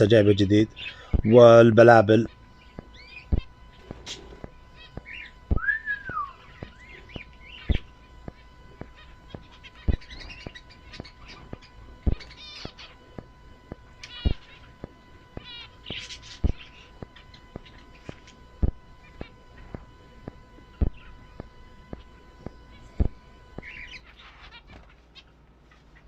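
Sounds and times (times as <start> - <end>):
faint steady tone: 0.0 - 26.0
small birds chirping: 0.0 - 26.0
rising-and-falling whistle: 5.6 - 6.4.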